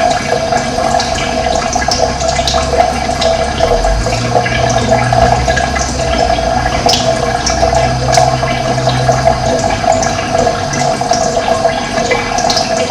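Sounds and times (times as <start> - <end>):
water gurgling and bubbling: 0.0 - 12.9
low rumble: 2.3 - 11.0.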